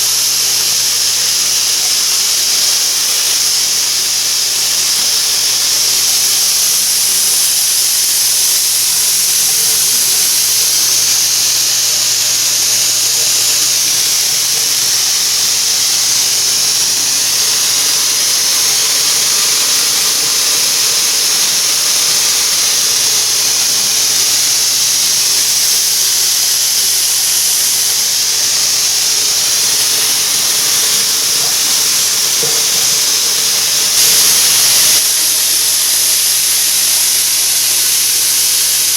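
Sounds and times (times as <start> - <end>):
shower water spray hissing: 0.0 - 38.9.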